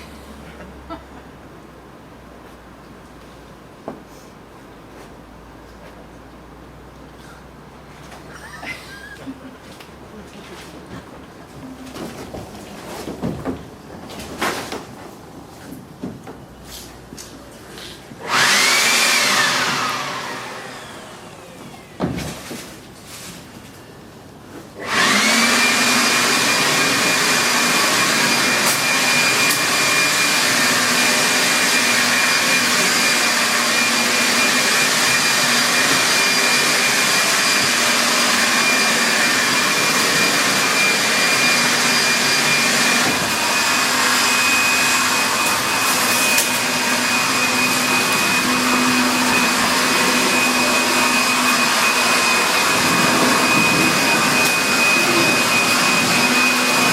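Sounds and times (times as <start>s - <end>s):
electric motor appliance blowing air: 18.2s - 21.5s, 24.8s - 56.9s.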